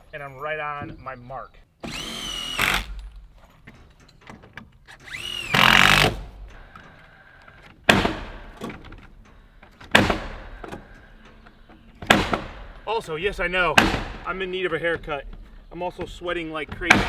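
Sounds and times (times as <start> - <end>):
cordless driver whine: 1.8 - 3.0, 4.9 - 6.3
nail-driving blows into wood: 1.8 - 3.1, 4.9 - 6.7, 7.8 - 8.8.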